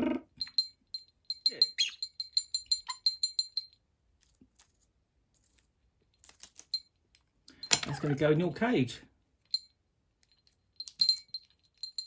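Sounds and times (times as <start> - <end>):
small metal toy bell ringing: 0.4 - 3.8, 7.6 - 8.2, 9.5 - 9.8, 10.8 - 12.0.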